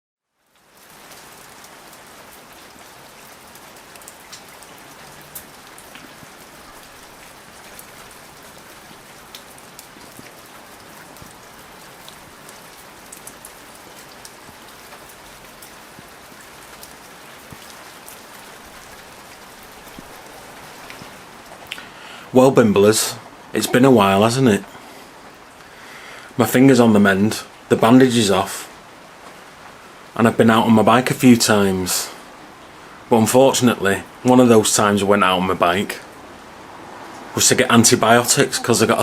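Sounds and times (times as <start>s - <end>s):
steady rain falling: 0.2s - 39.0s
raindrop hits: 0.6s - 25.7s.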